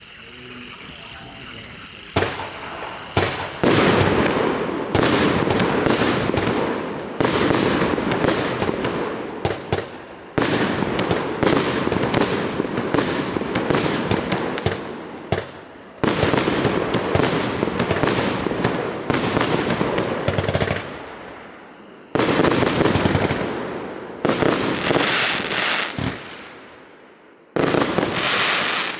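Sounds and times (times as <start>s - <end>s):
fireworks cake firing: 1.5s - 21.2s, 22.2s - 23.6s.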